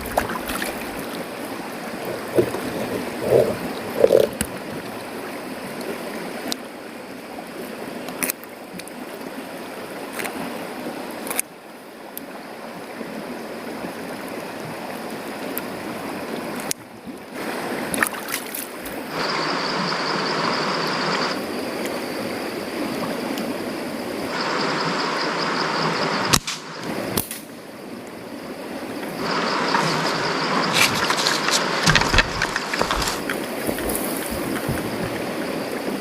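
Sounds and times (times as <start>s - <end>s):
river water rushing: 0.0s - 36.0s
thin high whine: 19.1s - 22.7s, 24.1s - 36.0s.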